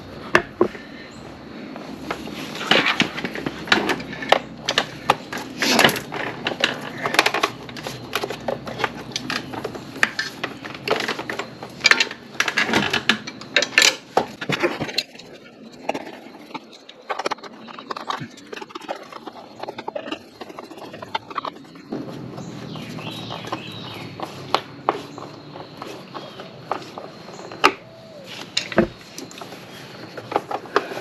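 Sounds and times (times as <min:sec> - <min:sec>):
tools clicking and knocking: 0:02.0 - 0:22.1, 0:24.2 - 0:29.5.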